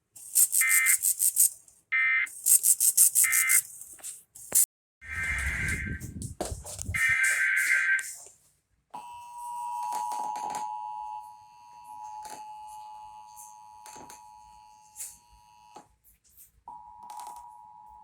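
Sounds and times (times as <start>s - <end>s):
two-tone alert signal: 0.6s - 1.1s, 3.2s - 3.7s, 5.0s - 6.2s, 6.9s - 8.1s.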